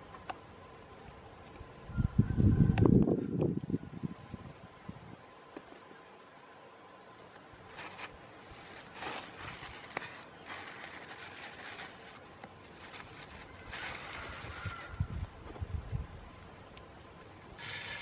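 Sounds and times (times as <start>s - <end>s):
rustling and scraping by hand: 7.1s - 18.0s.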